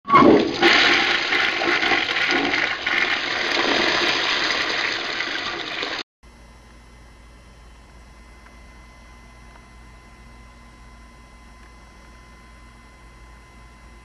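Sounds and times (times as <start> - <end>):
toilet flushing: 0.1 - 6.0.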